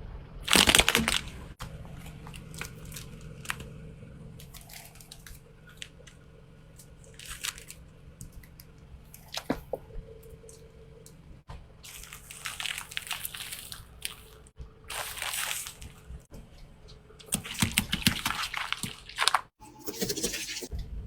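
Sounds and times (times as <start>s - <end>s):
objects crunching under car tyre: 0.4s - 16.3s, 17.1s - 19.6s.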